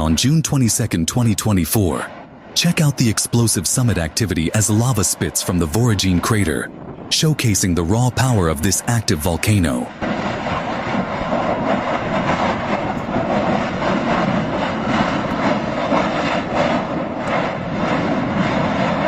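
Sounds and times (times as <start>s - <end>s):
volcanic eruption rushing and crackling: 0.0s - 19.0s.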